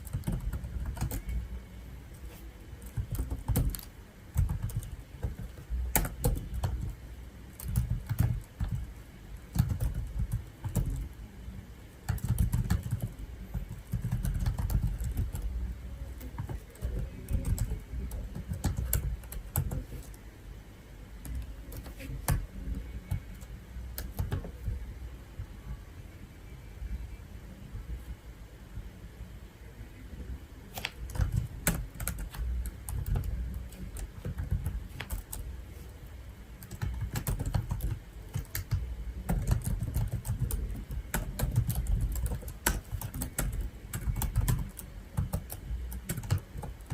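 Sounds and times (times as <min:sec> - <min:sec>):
keyboard typing: 0:00.0 - 0:01.6, 0:02.7 - 0:11.2, 0:12.0 - 0:20.2, 0:21.2 - 0:24.8, 0:30.7 - 0:35.5, 0:36.6 - 0:46.9.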